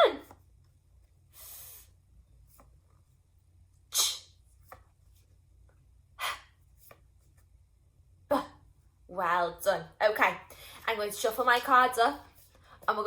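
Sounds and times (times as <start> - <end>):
woman making a breathy hiss: 1.4 - 1.9, 4.0 - 4.3.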